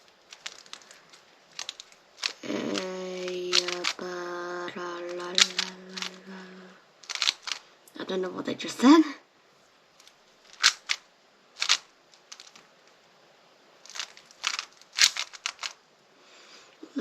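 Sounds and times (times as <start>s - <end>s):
speedcube layers clicking: 0.0s - 4.1s, 5.0s - 7.7s, 10.0s - 11.0s, 11.6s - 12.6s, 13.9s - 15.8s.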